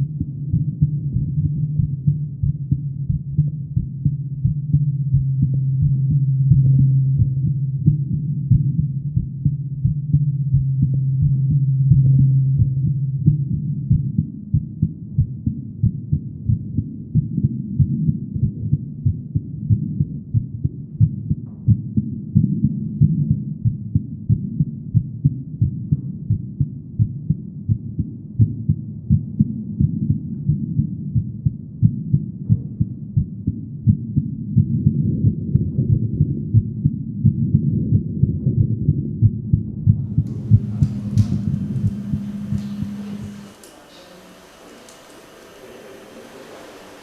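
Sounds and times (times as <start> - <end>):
heartbeat: 0.0 - 47.0
low hum: 39.8 - 47.0.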